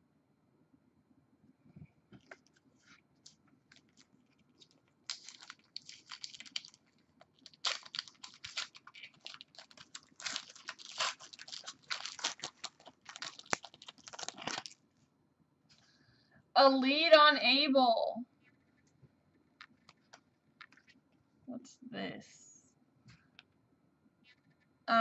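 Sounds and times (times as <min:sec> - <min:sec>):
plastic wrapper crinkling and tearing: 0:03.2 - 0:14.8.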